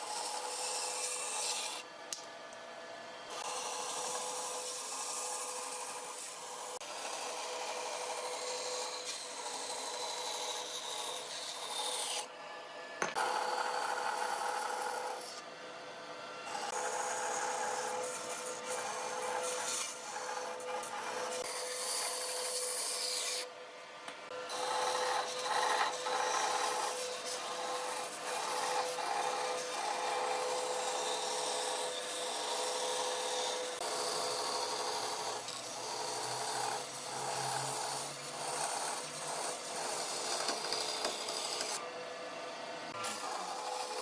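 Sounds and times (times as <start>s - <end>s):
machine rubbing wood: 16.5s - 23.5s, 24.5s - 41.8s, 42.9s - 44.0s.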